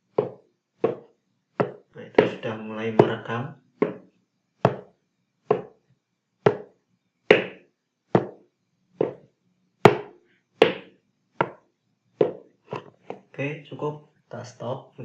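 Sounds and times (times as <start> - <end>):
shoe stomps: 0.1 - 2.4, 3.0 - 4.9, 5.5 - 5.8, 6.5 - 6.7, 8.2 - 8.4, 9.0 - 9.2, 9.9 - 11.6, 12.2 - 13.2.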